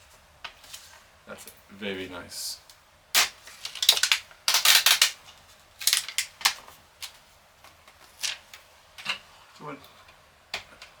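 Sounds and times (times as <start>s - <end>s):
packaging rustling and clicking: 3.2s - 5.2s, 5.8s - 7.2s.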